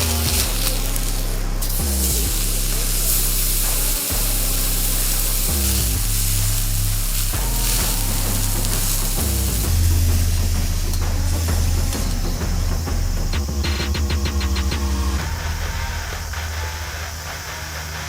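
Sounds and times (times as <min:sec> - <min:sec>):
food sizzling in a frying pan: 0:00.0 - 0:09.7
background music with bass line: 0:00.0 - 0:18.0.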